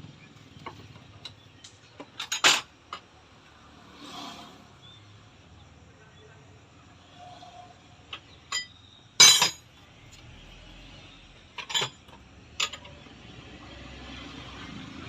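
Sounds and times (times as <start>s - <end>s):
metal tools clinking: 2.0s - 3.0s, 8.4s - 9.7s, 11.5s - 13.0s.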